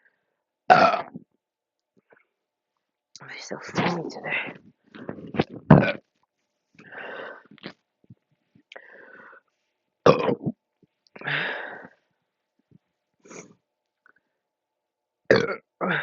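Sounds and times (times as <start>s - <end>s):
woman burping: 0.7s - 1.2s, 5.0s - 6.0s, 10.1s - 10.6s, 15.3s - 16.0s
woman clearing throat: 5.4s - 6.0s, 10.1s - 10.6s, 15.4s - 16.0s.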